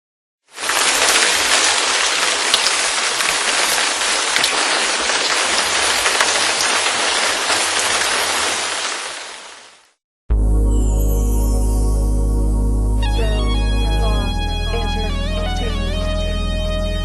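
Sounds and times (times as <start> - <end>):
heavy rain hissing: 0.5 - 9.9
raindrop ticks: 0.6 - 8.9.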